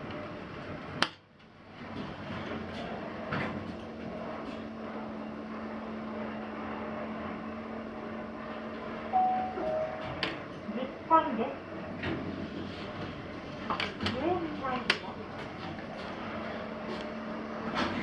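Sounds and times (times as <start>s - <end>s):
elevator running hum: 0.0s - 18.0s
elevator doors shutting: 9.0s - 10.7s.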